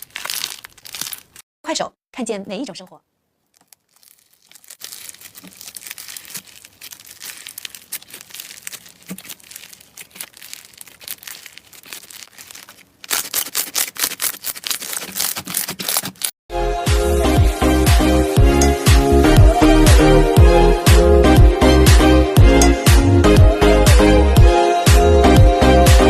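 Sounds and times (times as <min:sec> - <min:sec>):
slime crackling and popping: 0:00.0 - 0:01.4, 0:03.5 - 0:16.3.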